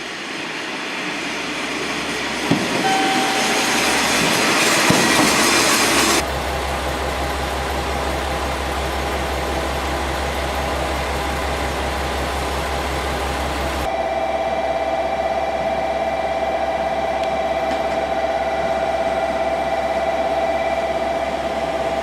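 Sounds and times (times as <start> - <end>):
train running low hum: 0.0 - 22.0
steady whine: 1.7 - 6.9.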